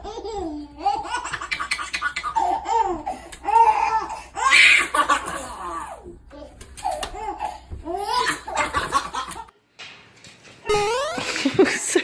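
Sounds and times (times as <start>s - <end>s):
person laughing hard: 11.2s - 12.0s.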